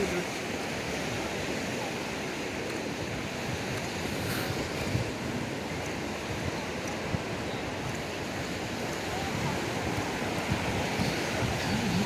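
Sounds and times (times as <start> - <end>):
ocean surf washing onto beach: 0.0 - 12.0
wind buffeting microphone: 0.0 - 12.0.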